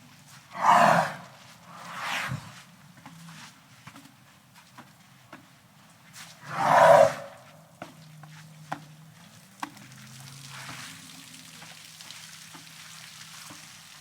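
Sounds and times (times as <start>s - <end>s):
elephant snorting through trunk: 0.5s - 2.6s, 6.4s - 7.4s.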